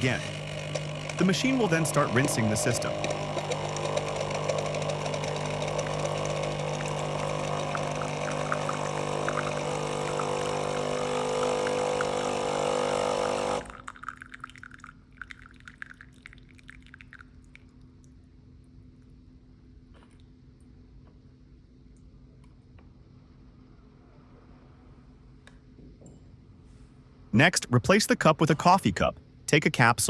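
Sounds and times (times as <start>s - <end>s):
coffee machine pump humming: 0.0s - 17.0s
water running into a cup: 0.0s - 17.7s
faint water drips: 13.7s - 18.2s.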